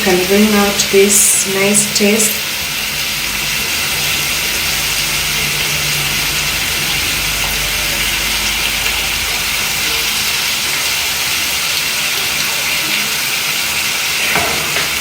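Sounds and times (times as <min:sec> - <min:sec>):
sauce simmering and sizzling: 0:00.0 - 0:15.0.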